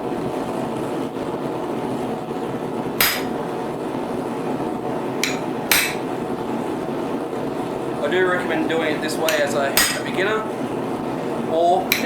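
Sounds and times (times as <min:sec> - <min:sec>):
steady hum: 0:00.0 - 0:12.0
hammer striking steel on anvil: 0:03.0 - 0:03.4, 0:05.2 - 0:06.0, 0:09.3 - 0:10.2.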